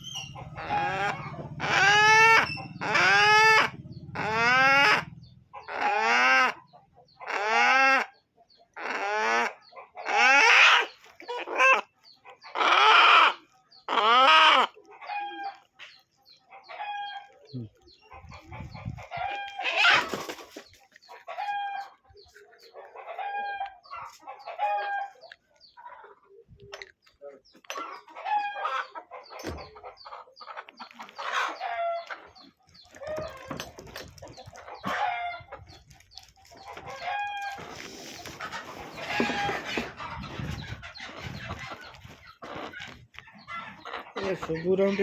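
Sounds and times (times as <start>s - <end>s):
chickens calling: 0.0s - 45.0s
chickens clucking: 0.0s - 45.0s
chicken harsh squawk: 0.6s - 5.1s, 8.8s - 11.8s, 12.6s - 14.8s, 19.5s - 20.2s.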